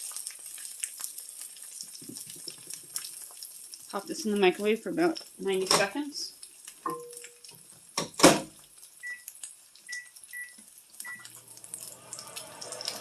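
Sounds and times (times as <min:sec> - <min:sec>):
microwave door clunk: 0:08.0 - 0:08.5
keypad beeps: 0:09.0 - 0:09.3, 0:09.9 - 0:11.4
microwave humming: 0:11.1 - 0:13.0.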